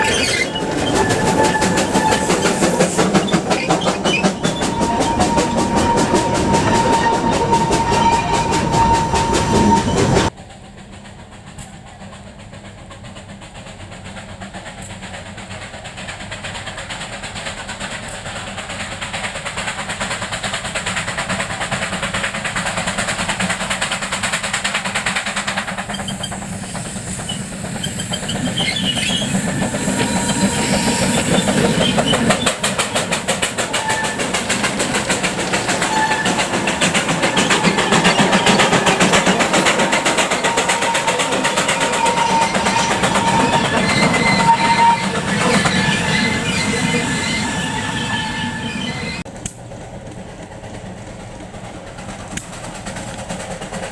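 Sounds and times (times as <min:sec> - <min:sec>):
train wheels clicking over rail joints: 0:00.0 - 0:53.9
steady high tone: 0:04.2 - 0:10.3.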